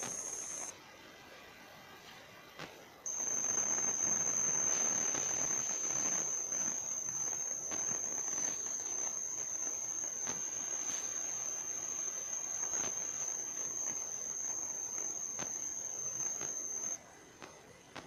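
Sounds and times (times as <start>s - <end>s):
high-pitched insect trill: 0.0s - 0.7s, 3.1s - 17.0s
background hiss: 0.0s - 18.0s
faint clicks: 12.4s - 18.0s.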